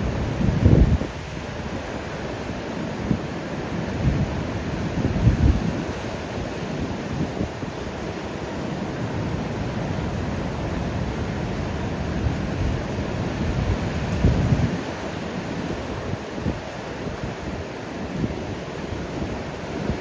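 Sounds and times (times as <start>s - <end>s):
ocean waves breaking on a beach: 0.0s - 20.0s.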